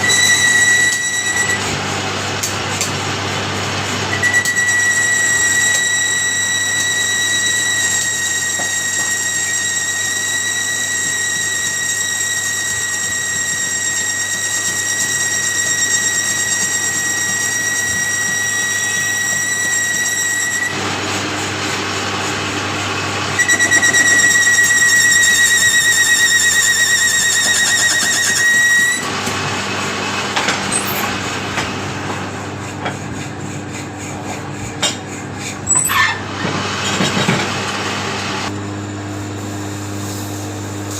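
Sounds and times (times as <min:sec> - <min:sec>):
high-pitched mechanical whine: 0:00.0 - 0:03.1, 0:03.8 - 0:31.2.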